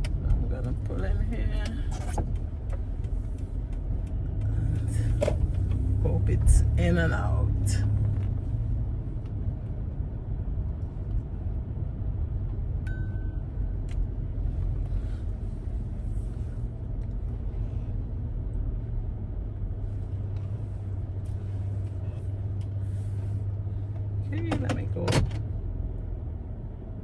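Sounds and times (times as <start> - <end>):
car engine rumble: 0.0 - 27.0
short beep: 12.9 - 13.5.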